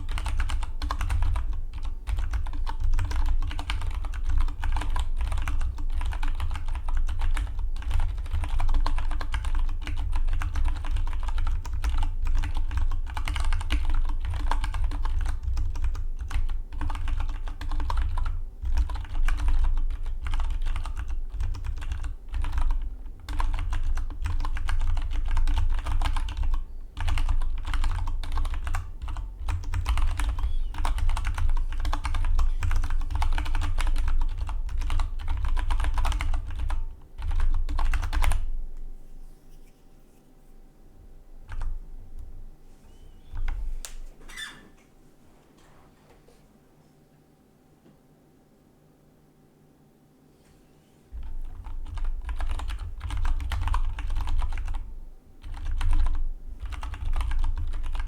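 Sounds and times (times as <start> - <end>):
mechanical keyboard typing: 0.0 - 38.4, 51.4 - 54.8, 55.4 - 58.0.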